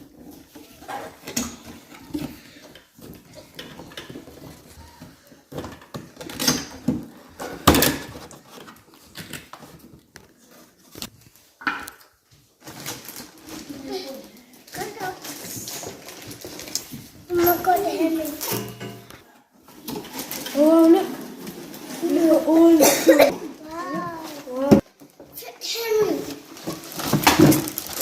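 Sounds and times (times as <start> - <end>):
cleaning trolley knocking and clattering: 14.8 - 28.0.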